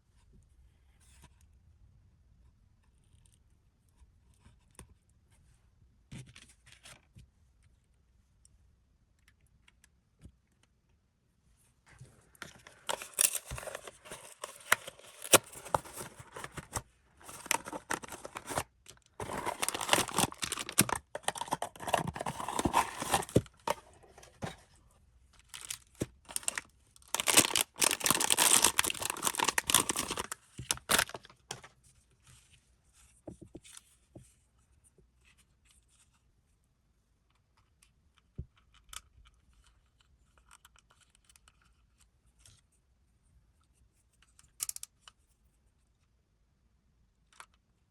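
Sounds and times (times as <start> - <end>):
packaging tearing and crinkling: 12.8 - 24.2, 25.5 - 31.3.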